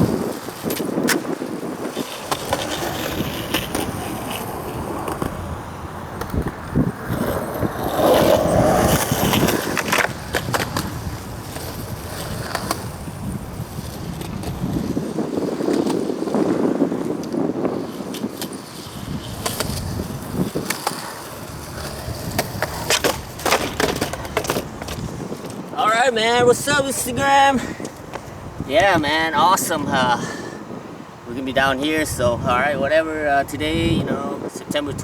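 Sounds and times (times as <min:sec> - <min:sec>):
skateboard clacks and knocks: 0:00.0 - 0:25.8
skateboard wheels rumbling: 0:00.0 - 0:35.0.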